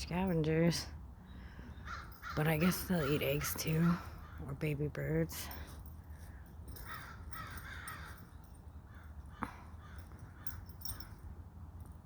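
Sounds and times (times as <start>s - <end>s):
crows cawing: 1.7s - 4.4s, 6.8s - 8.3s, 8.9s - 10.6s.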